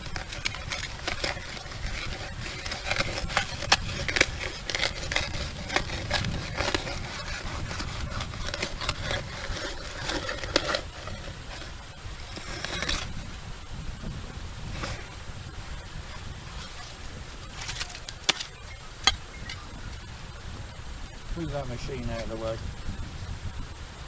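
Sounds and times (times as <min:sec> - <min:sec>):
digging tool scraping wet sand: 0:00.0 - 0:13.3, 0:14.6 - 0:15.2, 0:16.0 - 0:19.6, 0:21.5 - 0:22.5.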